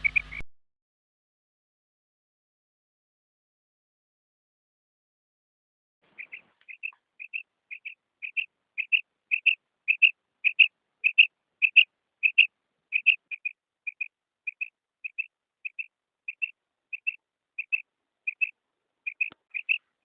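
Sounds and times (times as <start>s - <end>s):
quail calling: 0.0s - 0.4s, 6.1s - 20.0s.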